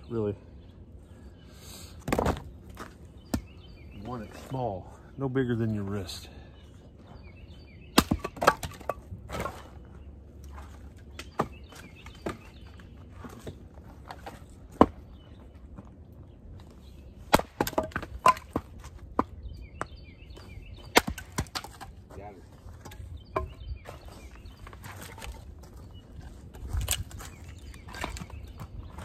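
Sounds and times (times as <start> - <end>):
wood chopping and cracking: 2.0 - 3.6, 7.9 - 9.8, 10.5 - 15.2, 17.3 - 22.0, 26.6 - 29.0.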